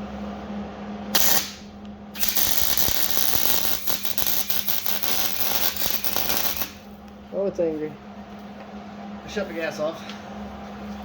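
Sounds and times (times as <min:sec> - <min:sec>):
welder arc crackling and spattering: 0:01.1 - 0:06.9.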